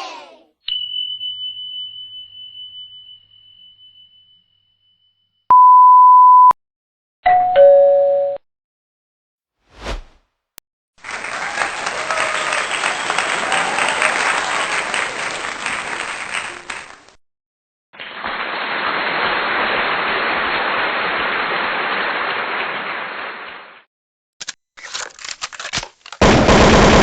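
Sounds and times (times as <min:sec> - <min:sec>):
audience clapping: 0:11.0 - 0:17.2, 0:18.1 - 0:23.7
dull round of applause: 0:11.0 - 0:17.2.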